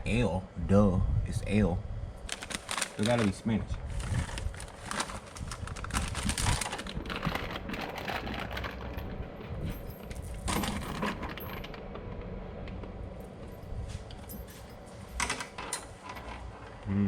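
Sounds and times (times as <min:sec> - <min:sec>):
light metallic clinks and rattles: 0:07.2 - 0:16.8.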